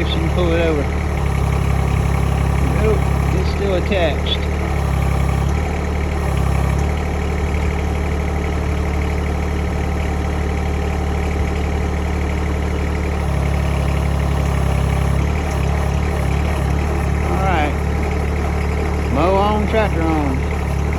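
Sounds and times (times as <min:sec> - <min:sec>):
tractor engine idling: 0:00.0 - 0:20.9.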